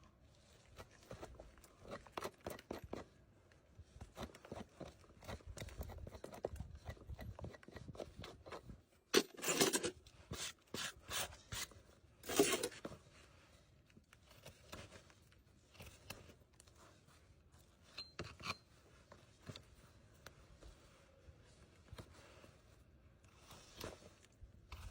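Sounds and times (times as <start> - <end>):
horse hoof trimming scrapes: 0.8 - 3.2, 4.0 - 13.0, 17.6 - 19.8, 23.3 - 24.9.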